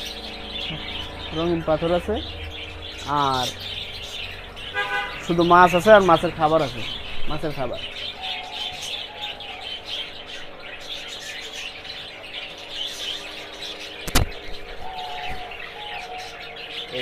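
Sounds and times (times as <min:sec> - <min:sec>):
small birds chirping: 0:00.0 - 0:17.0
sharp click: 0:14.0 - 0:14.4.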